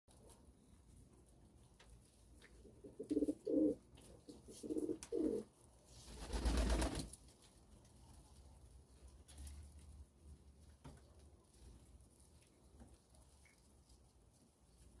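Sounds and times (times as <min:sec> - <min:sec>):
rustling noise: 0:00.1 - 0:15.0
pigeon cooing: 0:02.8 - 0:03.8, 0:04.4 - 0:05.5.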